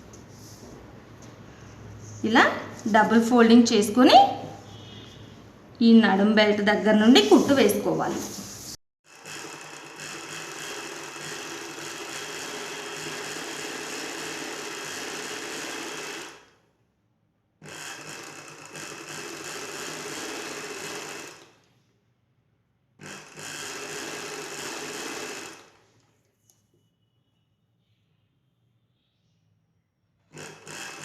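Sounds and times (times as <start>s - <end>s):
sewing machine stitching: 9.0s - 16.5s, 17.6s - 21.6s, 23.0s - 25.9s, 30.2s - 31.0s.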